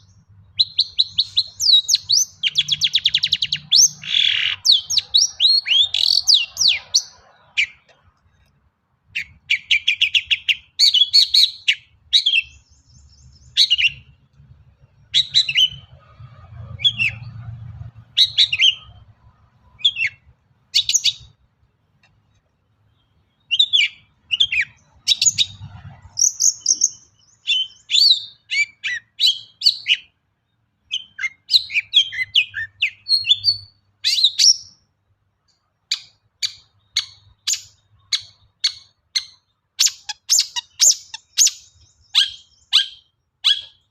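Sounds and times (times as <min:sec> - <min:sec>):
bird singing sharp chirps: 0:00.0 - 0:07.9, 0:09.2 - 0:14.2, 0:14.9 - 0:21.4, 0:22.9 - 0:34.9, 0:35.9 - 0:43.9.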